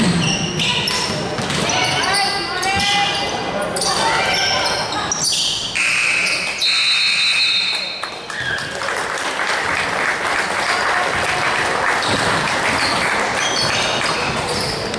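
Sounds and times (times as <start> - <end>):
crowd applauding and cheering: 7.7 - 14.2.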